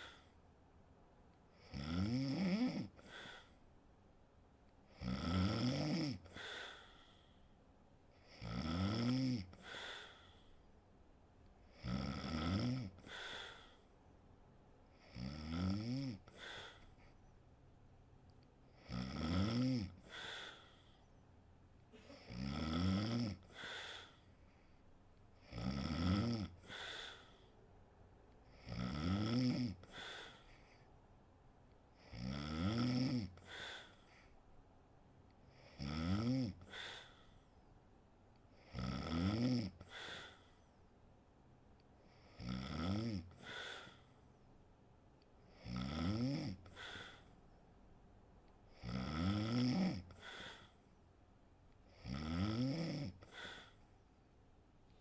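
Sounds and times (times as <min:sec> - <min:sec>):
woman snoring: 0:01.6 - 0:03.5, 0:04.9 - 0:06.9, 0:08.2 - 0:10.3, 0:11.7 - 0:13.8, 0:15.0 - 0:16.8, 0:18.8 - 0:20.7, 0:22.0 - 0:24.2, 0:25.4 - 0:27.3, 0:28.5 - 0:30.5, 0:32.0 - 0:34.0, 0:35.6 - 0:37.2, 0:38.6 - 0:40.4, 0:42.2 - 0:44.0, 0:45.5 - 0:47.2, 0:48.7 - 0:50.7, 0:51.9 - 0:53.8.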